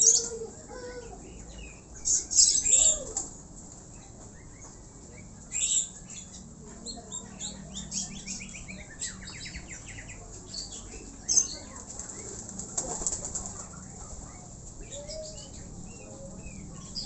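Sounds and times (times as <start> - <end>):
small birds chirping: 0.0 - 17.0
pigeon wings flapping: 11.8 - 13.7.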